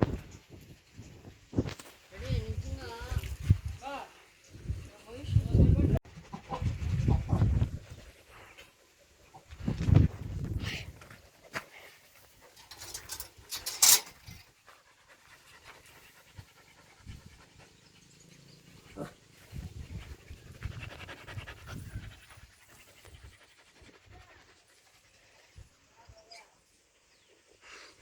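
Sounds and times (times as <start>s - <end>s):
puppy panting: 11.0s - 25.9s.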